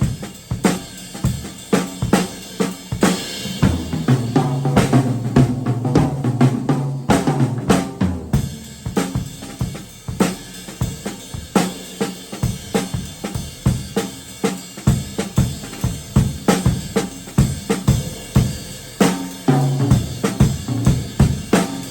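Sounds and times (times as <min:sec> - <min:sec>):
drum kit played solo: 0:00.0 - 0:21.9.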